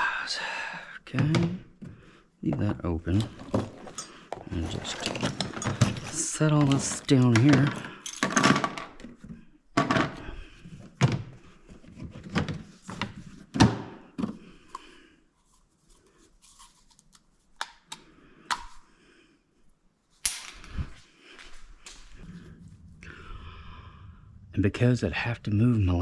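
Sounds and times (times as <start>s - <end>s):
plastic pipes knocking and clattering: 1.2s - 14.5s.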